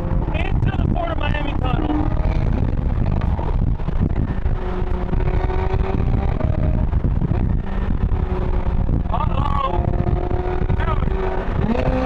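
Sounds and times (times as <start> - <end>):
car engine rumbling in tunnel: 0.0 - 12.0.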